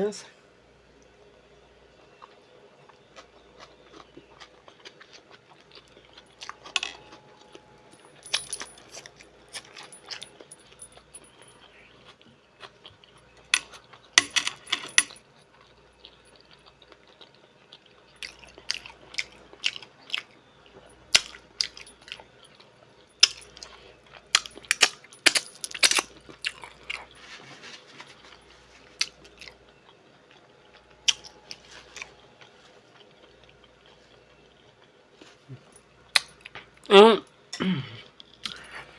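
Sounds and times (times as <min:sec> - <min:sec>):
shells clicking and clinking: 0:06.5 - 0:11.6, 0:13.5 - 0:15.2, 0:23.1 - 0:23.8, 0:24.4 - 0:26.2.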